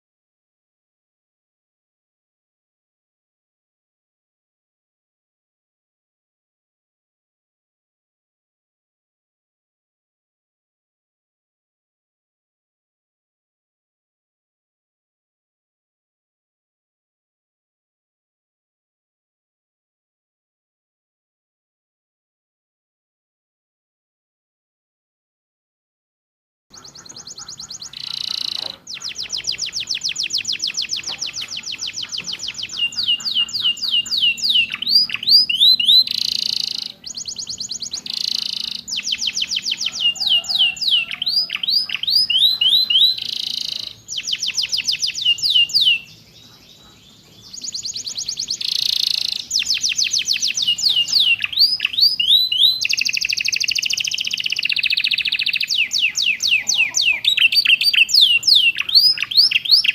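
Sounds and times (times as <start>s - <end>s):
canary singing trills: 26.7s - 59.9s.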